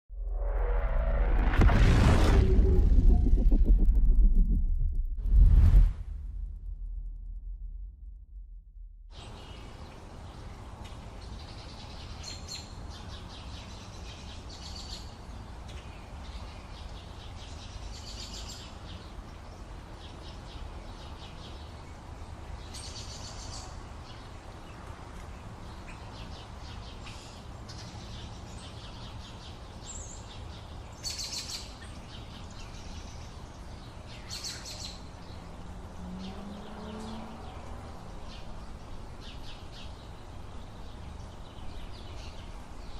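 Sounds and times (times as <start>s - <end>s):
low background rumble: 0.1s - 9.2s.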